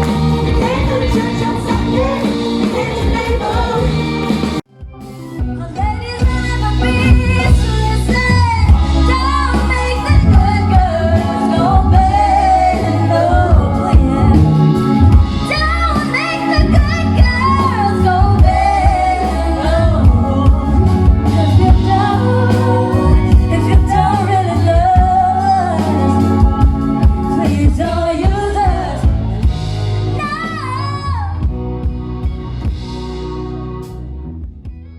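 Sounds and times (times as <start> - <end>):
live band playing: 0.0 - 34.9.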